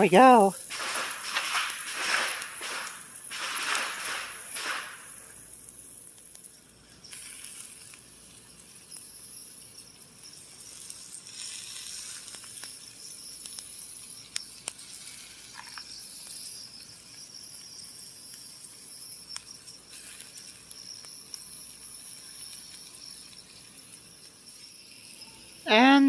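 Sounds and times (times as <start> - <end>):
insects buzzing: 0.0 - 26.0
sausages sizzling on a grill: 0.0 - 26.0
light clicks and pops: 10.8 - 16.5.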